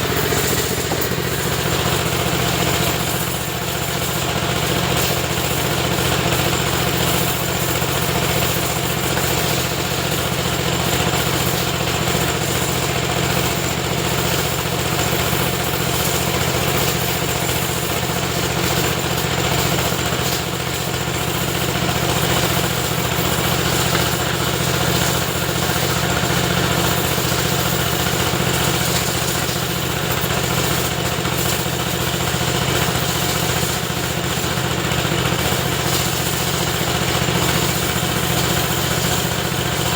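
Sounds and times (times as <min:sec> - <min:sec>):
pressure washer motor humming: 0:00.0 - 0:39.9.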